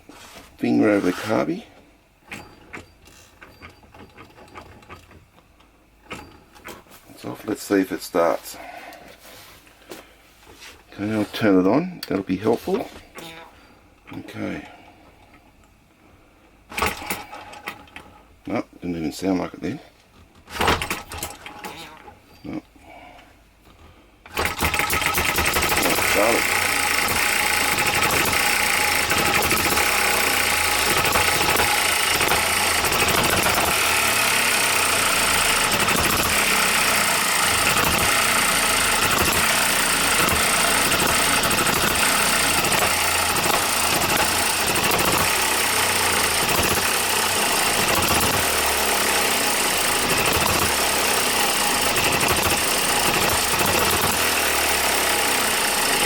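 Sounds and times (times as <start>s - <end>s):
small gas engine clattering: 0.8s - 8.7s, 16.7s - 18.2s, 20.7s - 22.6s, 24.2s - 56.0s.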